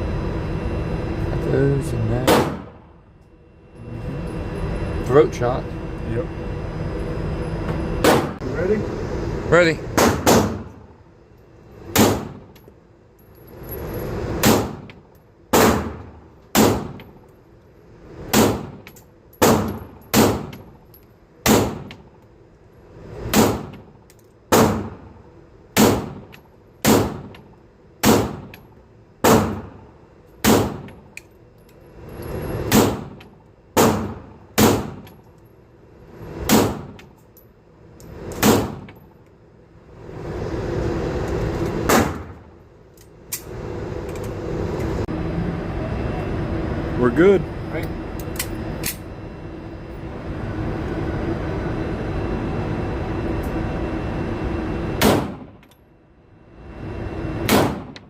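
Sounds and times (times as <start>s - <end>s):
pistol shots: 2.3s - 2.8s, 10.0s - 10.7s, 11.9s - 12.4s, 14.4s - 14.8s, 15.5s - 16.0s, 16.6s - 17.0s, 18.3s - 18.8s, 19.4s - 20.5s, 21.4s - 21.9s, 23.3s - 23.8s, 24.5s - 25.0s, 25.8s - 27.3s, 28.0s - 28.5s, 29.2s - 29.7s, 30.4s - 30.9s, 32.7s - 33.2s, 33.8s - 35.0s, 36.5s - 37.0s, 38.4s - 38.9s, 55.0s - 55.5s, 57.5s - 58.0s.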